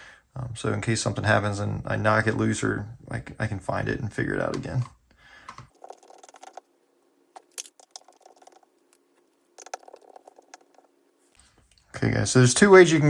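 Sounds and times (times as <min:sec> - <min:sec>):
small tools clicking and rattling: 0:05.5 - 0:06.7, 0:07.4 - 0:11.0.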